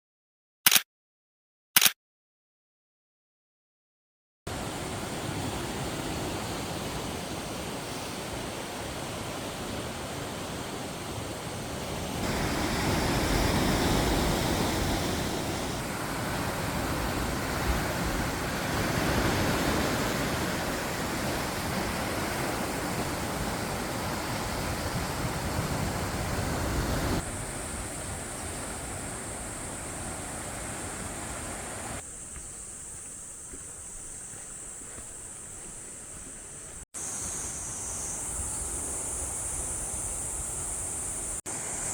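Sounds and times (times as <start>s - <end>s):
ocean surf: 4.5s - 32.0s, 39.1s - 41.9s
high insect drone: 4.5s - 41.9s
wind noise: 4.6s - 32.0s.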